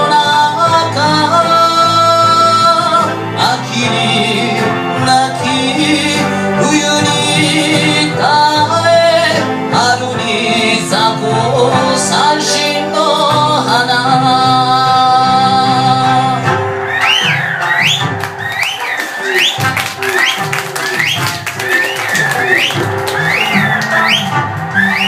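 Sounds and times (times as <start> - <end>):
band accompaniment: 0.0 - 25.0
high sliding whistles: 16.8 - 25.0.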